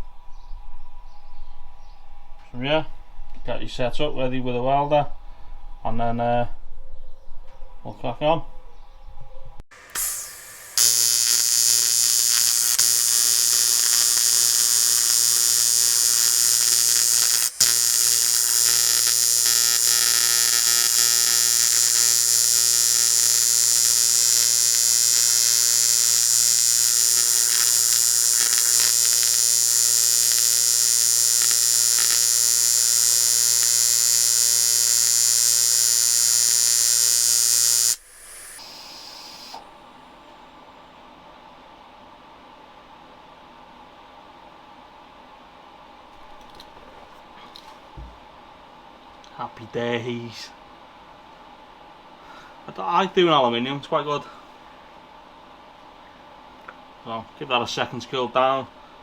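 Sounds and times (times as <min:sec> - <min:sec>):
arc welder buzzing: 0:09.7 - 0:39.8.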